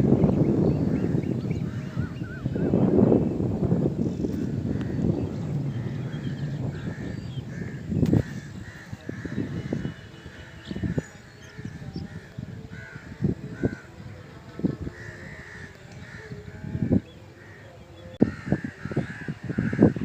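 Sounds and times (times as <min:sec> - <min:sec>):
birds calling harshly: 0:00.0 - 0:20.0
low thumps: 0:03.6 - 0:09.9.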